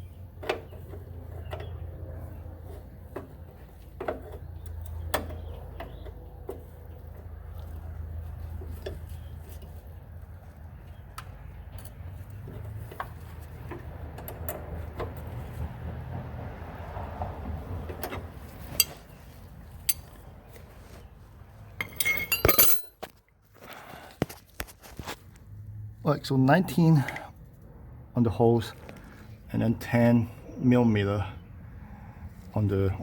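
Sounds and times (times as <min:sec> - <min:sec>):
wrenches clinking on metal fittings: 0:21.8 - 0:23.0.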